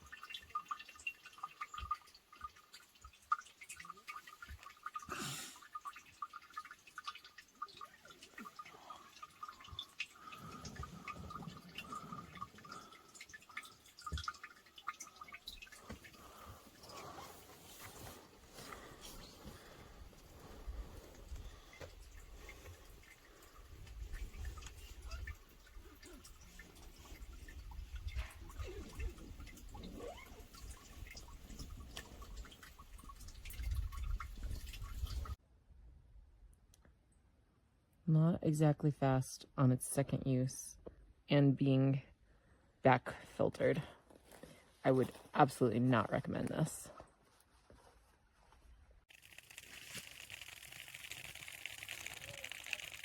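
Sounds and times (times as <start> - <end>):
water dripping: 0.0 - 35.4, 49.1 - 53.0.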